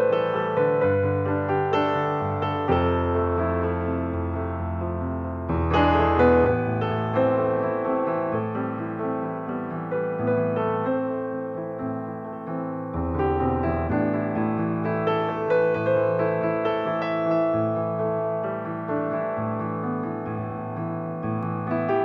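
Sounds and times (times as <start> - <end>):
piano music: 0.0 - 22.0.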